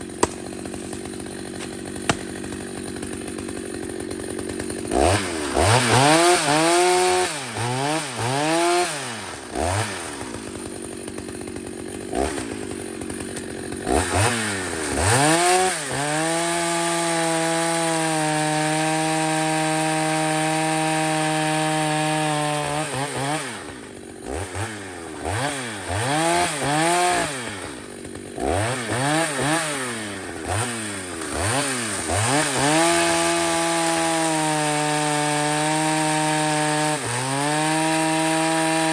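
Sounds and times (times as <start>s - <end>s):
chainsaw engine revving: 0.0s - 38.9s.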